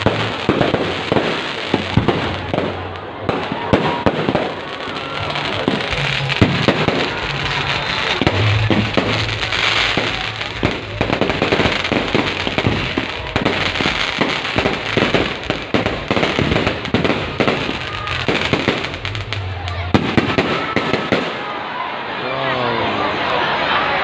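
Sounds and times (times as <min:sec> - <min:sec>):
fireworks bangs and crackles: 0:00.0 - 0:21.6
music playing: 0:04.6 - 0:21.0.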